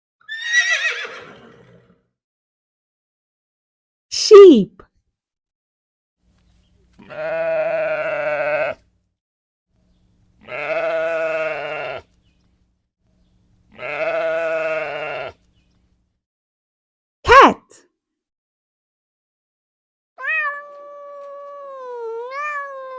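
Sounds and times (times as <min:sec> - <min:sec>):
sheep bleating: 0:07.0 - 0:08.9, 0:10.4 - 0:12.2, 0:13.7 - 0:15.4.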